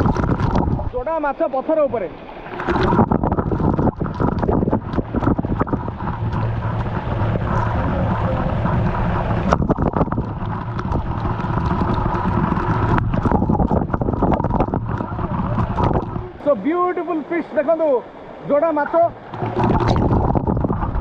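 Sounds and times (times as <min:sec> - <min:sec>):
wind buffeting microphone: 0:00.0 - 0:01.1, 0:02.4 - 0:16.5, 0:19.0 - 0:21.0
waterfall rushing: 0:01.9 - 0:21.0.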